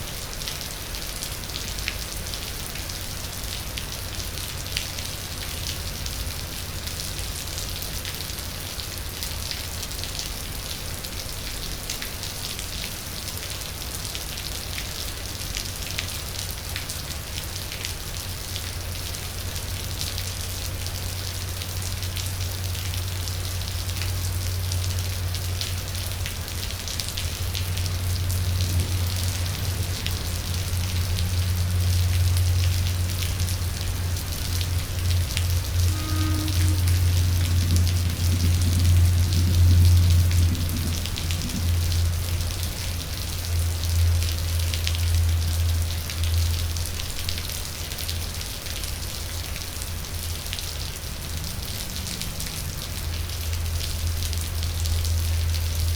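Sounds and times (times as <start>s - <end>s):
steady rain falling: 0.0s - 55.9s
low steady hum: 23.2s - 45.6s.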